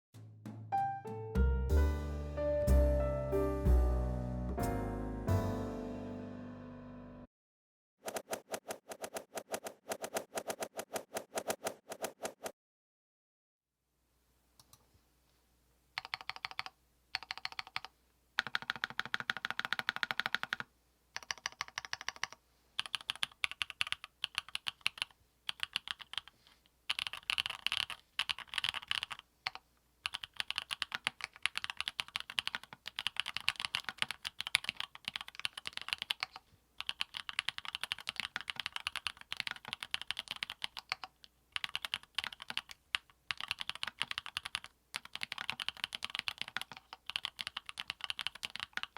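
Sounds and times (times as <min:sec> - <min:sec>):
typing on mechanical keyboard: 0:16.0 - 0:26.3, 0:26.9 - 0:48.9.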